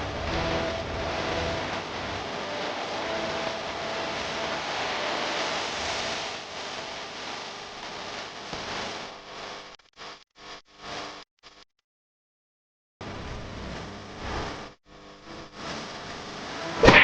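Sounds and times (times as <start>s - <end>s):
steady hiss of fan noise: 0.0s - 8.5s.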